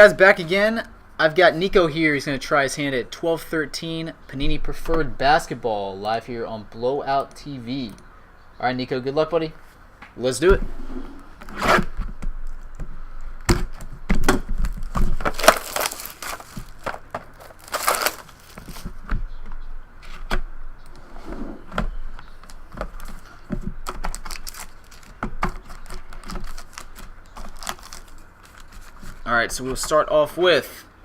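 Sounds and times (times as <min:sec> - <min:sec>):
packaging tearing and crinkling: 0:14.2 - 0:19.0, 0:23.8 - 0:29.2.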